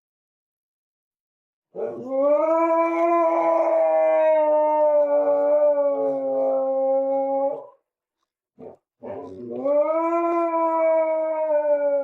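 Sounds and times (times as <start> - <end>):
dog howling: 1.8 - 7.8, 8.6 - 12.0.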